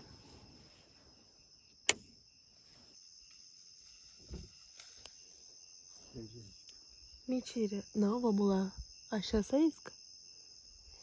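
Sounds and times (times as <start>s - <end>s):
crickets chirring: 0.0s - 11.0s
sharp click: 1.8s - 2.1s.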